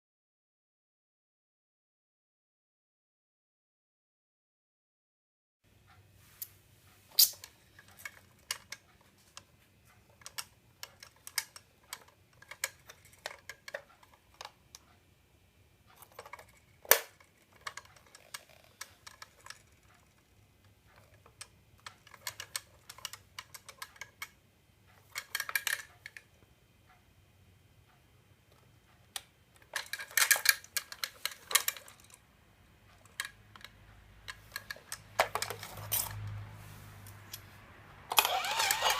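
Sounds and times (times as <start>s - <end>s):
plastic toy coin bank clicking: 10.2s - 14.6s, 16.0s - 20.2s, 20.9s - 24.4s, 25.0s - 26.2s, 29.6s - 32.2s, 33.0s - 36.3s, 38.1s - 38.9s.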